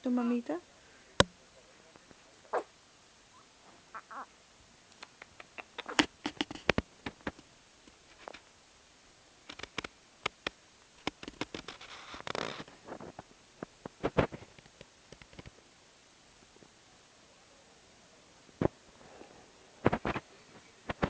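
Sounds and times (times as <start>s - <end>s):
baby mouth clicks and smacks: 4.9s - 7.4s, 9.5s - 11.8s.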